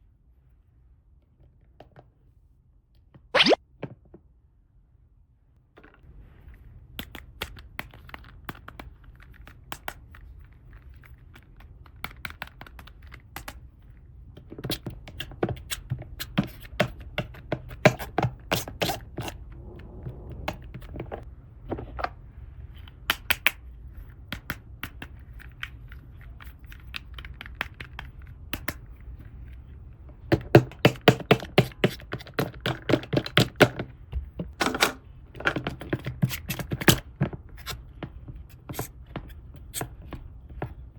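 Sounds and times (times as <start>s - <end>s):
faint low hum: 19.2s - 22.9s.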